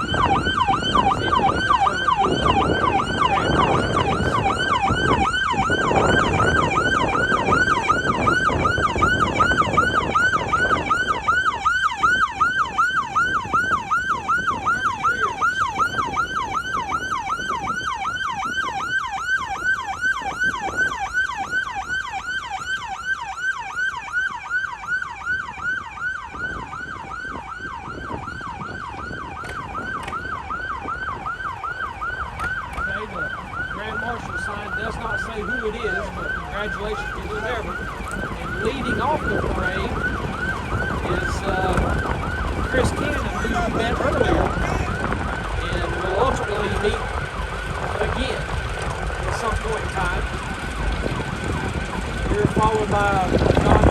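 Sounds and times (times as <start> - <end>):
low vehicle rumble: 0.0 - 53.9
police siren yelping: 0.0 - 53.9.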